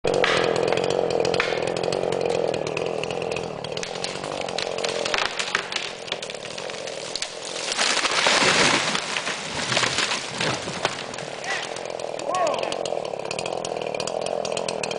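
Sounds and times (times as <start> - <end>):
chainsaw running: 0.0 - 14.9
wood cracking: 0.1 - 14.9
tree crashing down: 2.8 - 14.7.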